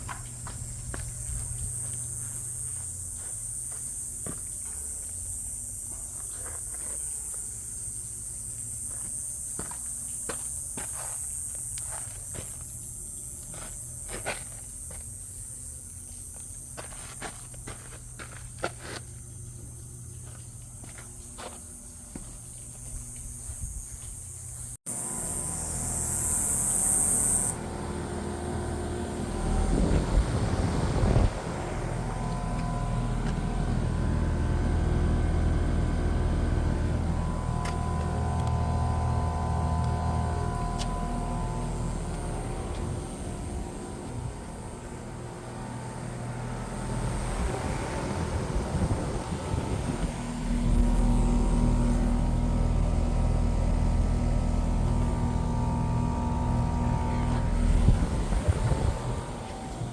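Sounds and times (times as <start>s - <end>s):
air conditioner unit humming: 0.0s - 6.3s, 7.0s - 59.9s
whining tones: 24.9s - 59.9s
rough rumble: 27.7s - 59.9s.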